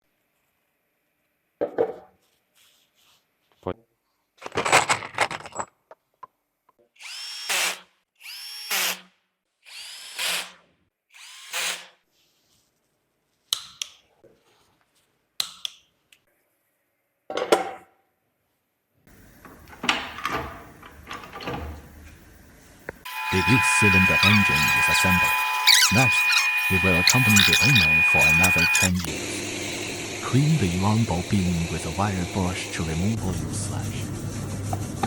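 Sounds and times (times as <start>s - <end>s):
power drill spinning up: 7.0s - 9.0s, 9.7s - 11.9s, 23.1s - 29.8s.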